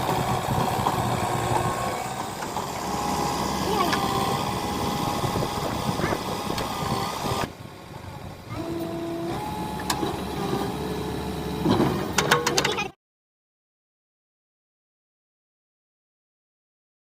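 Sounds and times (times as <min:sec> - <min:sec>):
diesel engine running: 0:00.0 - 0:12.9.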